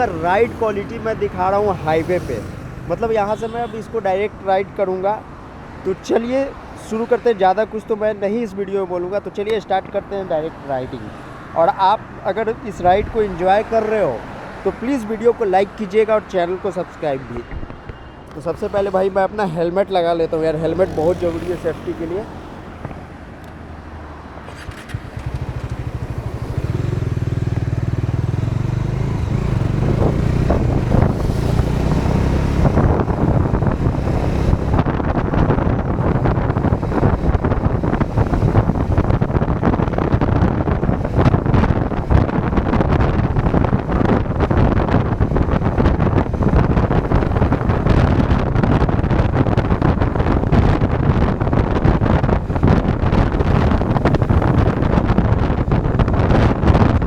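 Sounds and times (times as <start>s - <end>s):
motorcycle engine running: 0.0s - 3.9s, 24.3s - 57.0s
road and wind noise: 0.0s - 57.0s.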